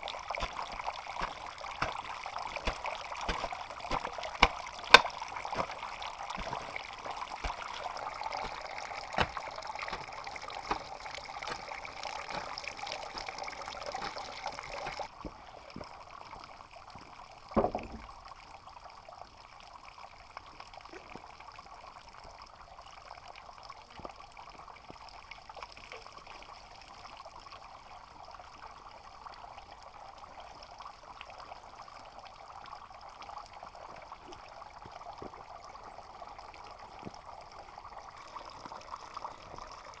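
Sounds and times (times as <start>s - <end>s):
water trickling through trough: 0.0s - 15.1s
clicks and knocks: 0.4s - 5.8s, 6.4s - 11.7s.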